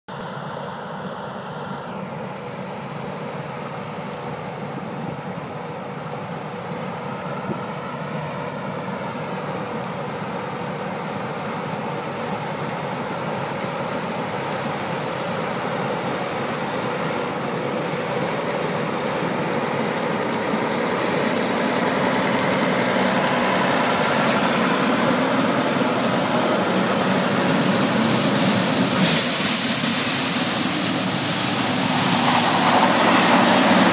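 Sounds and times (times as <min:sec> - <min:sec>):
harvest machinery engines running: 0:00.2 - 0:33.9
hissing rush: 0:15.8 - 0:33.9.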